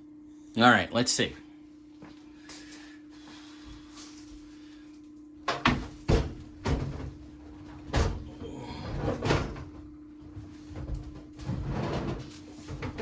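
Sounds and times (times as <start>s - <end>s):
faint steady hum: 0.0s - 13.0s
microwave knocking against wall mount: 5.5s - 7.2s.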